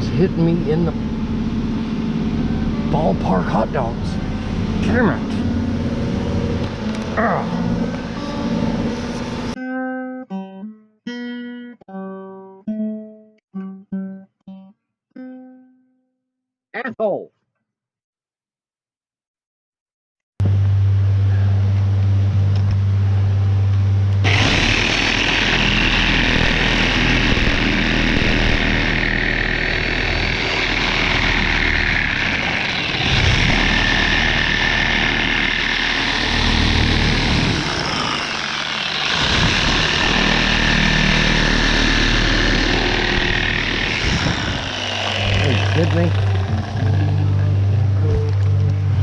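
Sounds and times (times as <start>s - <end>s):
low hum: 0.0s - 9.6s, 20.4s - 49.0s
mechanical drone: 0.0s - 9.6s, 20.4s - 49.0s
rushing noise: 24.2s - 45.8s.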